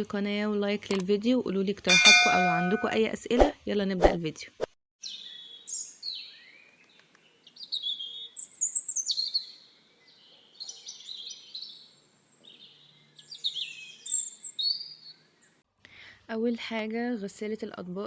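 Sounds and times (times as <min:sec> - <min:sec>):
small birds chirping: 0:05.0 - 0:15.6.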